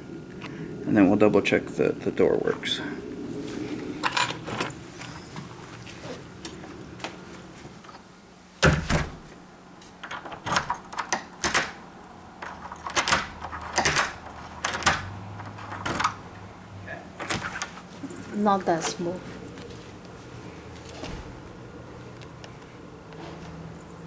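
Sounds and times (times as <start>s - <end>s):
deadbolt clicking and clacking: 8.6s - 9.3s, 10.0s - 16.4s, 17.2s - 17.9s
door thud: 8.6s - 9.3s.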